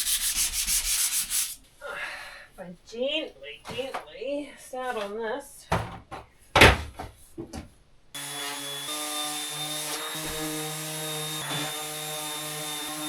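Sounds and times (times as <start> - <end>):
electric sander running: 8.2 - 13.0.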